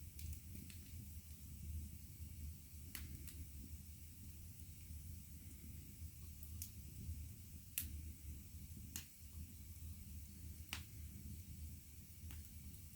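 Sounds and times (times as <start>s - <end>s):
sharp pops from fire: 0.0s - 1.4s, 2.8s - 3.5s, 6.3s - 6.9s, 7.6s - 8.1s, 8.8s - 9.2s, 10.5s - 11.0s, 12.2s - 12.9s
wood fire crackling: 0.0s - 12.9s.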